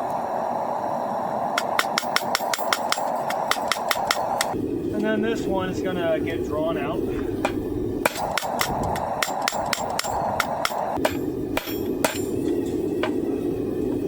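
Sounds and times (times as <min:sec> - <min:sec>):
hammer striking steel on anvil: 0:01.6 - 0:04.6, 0:07.4 - 0:13.2.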